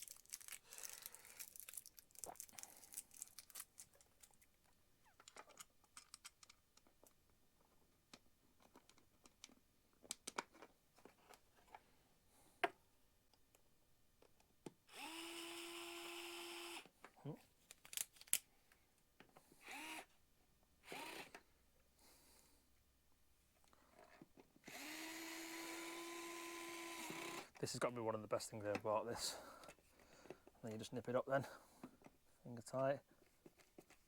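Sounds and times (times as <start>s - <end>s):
clicks of screws and plastic: 5.2s - 7.2s, 8.1s - 11.4s, 17.0s - 18.5s
small electric motor whir: 14.9s - 16.8s, 19.6s - 20.0s, 20.8s - 21.3s, 24.7s - 27.5s.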